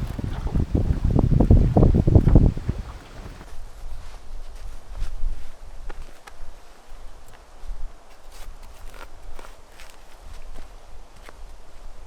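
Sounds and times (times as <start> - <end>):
faint clicks: 0.0 - 3.5
wind buffeting microphone: 0.0 - 3.5.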